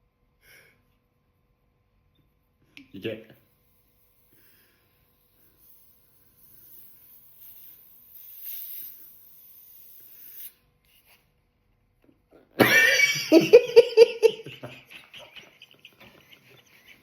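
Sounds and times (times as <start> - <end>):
people laughing: 12.6 - 17.0.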